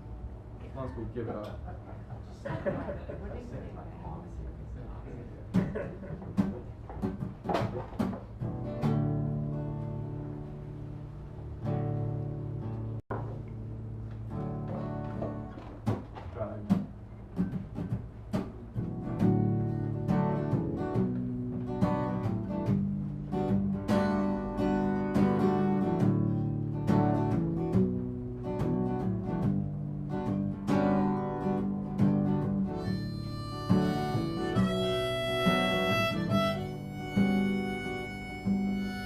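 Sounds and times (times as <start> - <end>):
acoustic guitar playing: 5.5 - 39.0
long held high instrument notes: 32.8 - 39.0.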